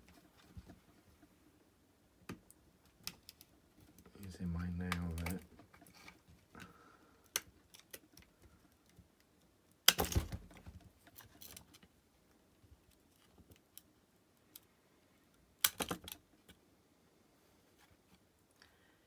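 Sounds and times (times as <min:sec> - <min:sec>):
small plastic parts clicking: 0:15.6 - 0:16.6.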